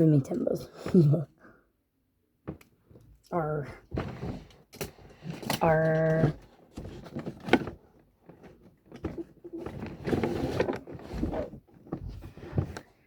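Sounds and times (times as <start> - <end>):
rustling: 3.9 - 13.0.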